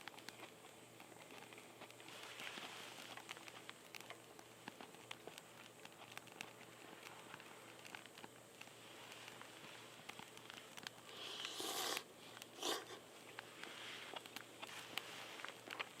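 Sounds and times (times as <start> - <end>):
low hiss: 0.0 - 16.0
wood fire ticks and pops: 3.0 - 11.0.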